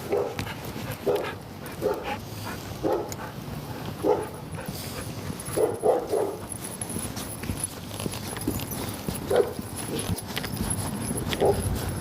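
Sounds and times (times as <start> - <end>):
dog barking: 0.0 - 0.4, 1.0 - 2.1, 2.8 - 3.2, 4.0 - 4.4, 5.5 - 6.4, 9.3 - 9.6, 11.4 - 11.7.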